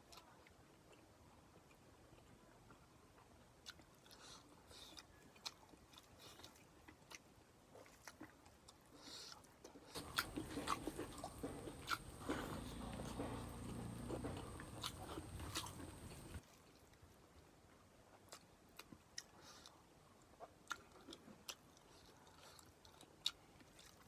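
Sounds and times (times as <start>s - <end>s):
person chewing food: 3.6s - 16.5s, 20.6s - 24.0s.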